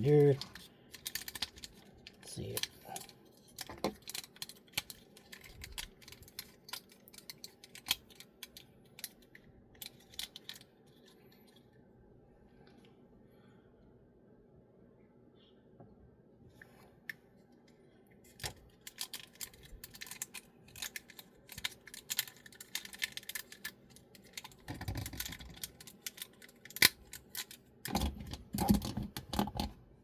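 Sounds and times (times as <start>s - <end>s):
plastic toy joints clicking: 0.2s - 1.8s, 18.4s - 29.8s.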